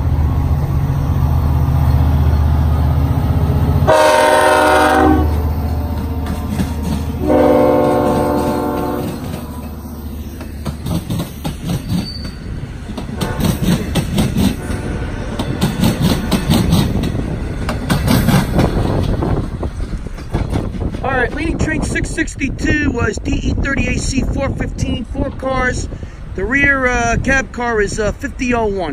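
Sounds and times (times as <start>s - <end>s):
locomotive horn blast: 3.8s - 5.5s, 7.2s - 9.8s, 13.2s - 13.6s, 14.6s - 15.4s
train wheels clicking over rail joints: 5.3s - 28.0s.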